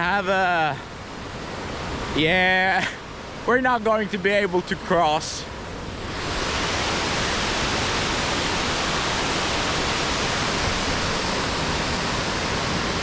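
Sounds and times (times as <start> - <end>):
waterfall rushing: 5.8 - 13.0.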